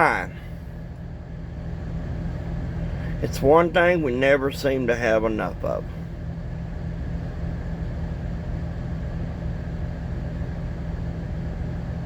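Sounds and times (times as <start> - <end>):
truck engine droning: 0.0 - 12.0.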